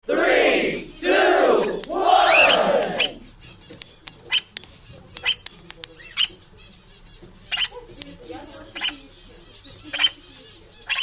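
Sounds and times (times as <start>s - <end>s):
parrot calling: 0.9s - 3.7s, 4.3s - 4.5s, 5.2s - 6.4s, 7.4s - 11.0s.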